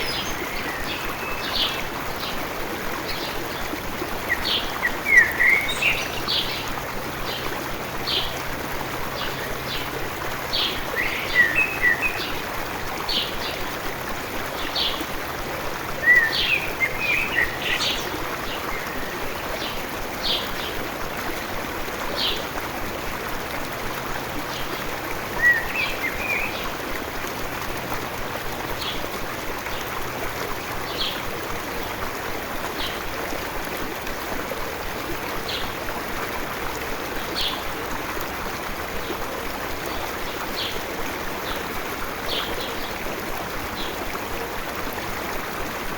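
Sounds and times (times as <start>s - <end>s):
small birds chirping: 0.0s - 2.4s, 4.2s - 6.7s
stream running: 0.0s - 45.9s.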